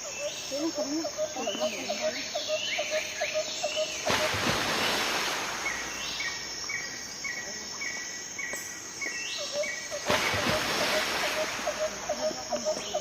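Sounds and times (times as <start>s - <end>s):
birds or insects calling: 0.0s - 13.0s
steady hiss: 4.0s - 13.0s.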